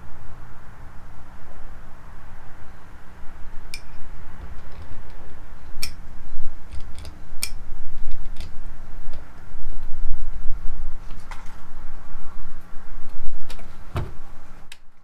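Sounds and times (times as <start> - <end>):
low steady rumble: 0.0 - 15.0
metal tools clicking: 6.6 - 8.6.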